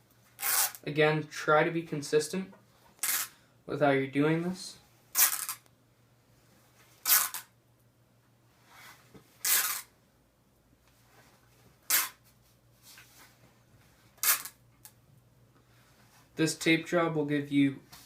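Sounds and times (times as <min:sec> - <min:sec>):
cloth tape being pulled: 0:00.3 - 0:00.8, 0:03.0 - 0:03.4, 0:05.1 - 0:05.7, 0:07.0 - 0:07.6, 0:08.8 - 0:09.9, 0:11.8 - 0:12.4, 0:14.2 - 0:15.0.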